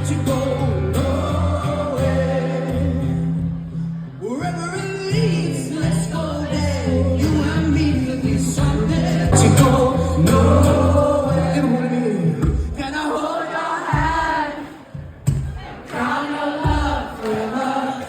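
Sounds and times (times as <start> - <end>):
man singing: 0.0 - 3.3, 4.2 - 14.4
acoustic guitar: 0.0 - 13.1
audience singing along: 0.3 - 3.3, 5.5 - 18.0.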